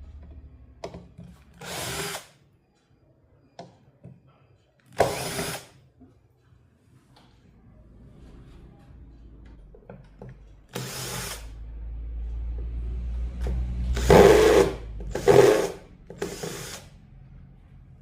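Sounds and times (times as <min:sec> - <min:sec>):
low hum: 0:07.5 - 0:16.2
small power tool running: 0:14.0 - 0:16.8.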